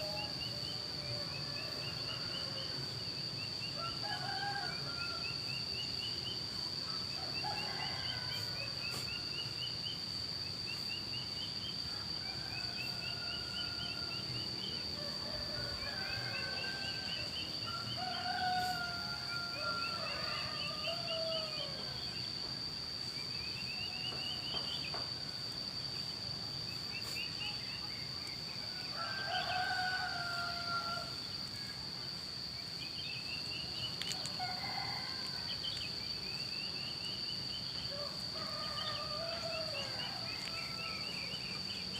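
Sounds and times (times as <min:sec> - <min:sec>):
roosters crowing: 0:03.8 - 0:05.4, 0:06.8 - 0:09.0, 0:14.8 - 0:22.1, 0:28.6 - 0:31.2, 0:34.1 - 0:35.7, 0:37.9 - 0:41.8.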